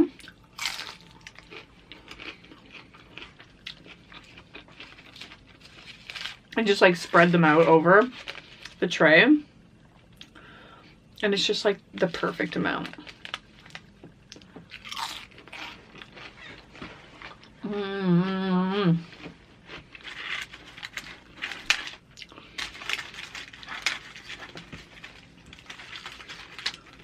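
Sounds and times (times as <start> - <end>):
person crunching chips: 0.1 - 8.8, 12.7 - 17.6, 19.1 - 27.0
person humming mmm: 17.6 - 19.1.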